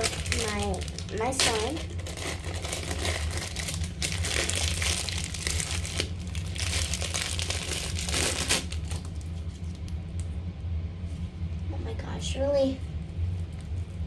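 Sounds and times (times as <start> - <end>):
slime crackling in hands: 0.0 - 10.0
steady low hum: 0.0 - 14.0.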